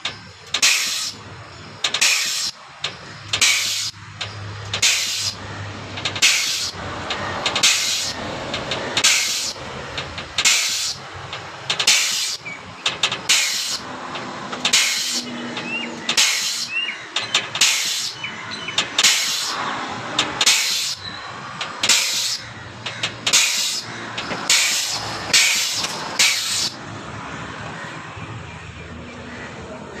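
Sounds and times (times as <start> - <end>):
air motor exhaust hiss: 0.6 - 4.0, 4.6 - 5.4, 6.2 - 18.3, 18.9 - 22.5, 23.3 - 26.8.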